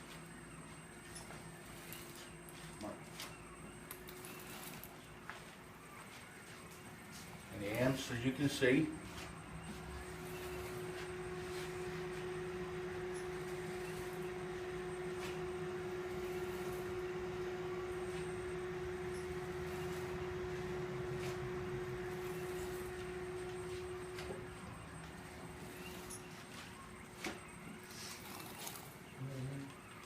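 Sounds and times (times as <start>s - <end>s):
engine high whine: 0.0s - 30.0s
low hum: 0.0s - 30.0s.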